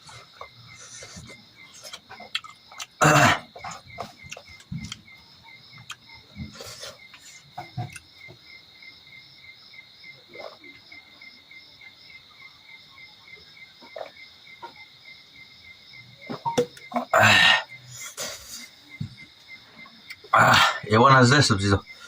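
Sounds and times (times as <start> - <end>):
insects chirping: 0.0 - 22.0
eating smacking sounds: 0.3 - 5.2, 5.8 - 8.1.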